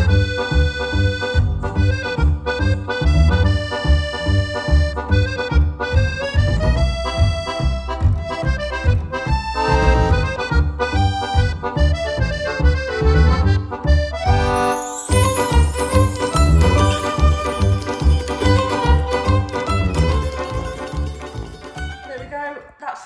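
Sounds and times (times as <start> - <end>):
melody over bass beat: 14.3 - 22.1.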